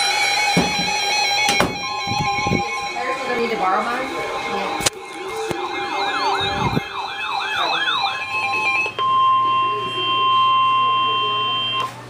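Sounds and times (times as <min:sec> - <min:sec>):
warbling siren: 0:00.0 - 0:10.5
high-pitched alert tone: 0:01.7 - 0:09.9.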